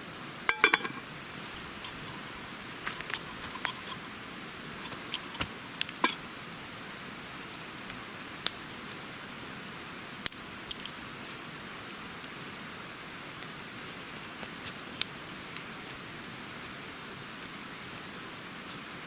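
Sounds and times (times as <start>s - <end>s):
light rain hiss: 0.0s - 19.0s
tableware clicking and tapping: 0.5s - 1.0s.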